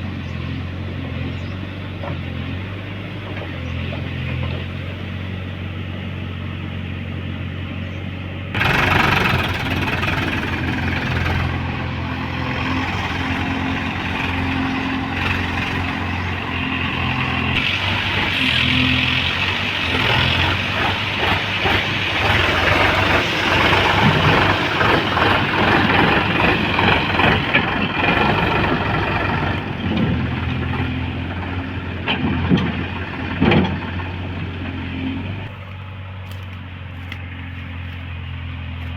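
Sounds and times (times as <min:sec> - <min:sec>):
diesel engine revving under load: 0:00.0 - 0:38.9
rough mechanical clatter: 0:08.5 - 0:38.9.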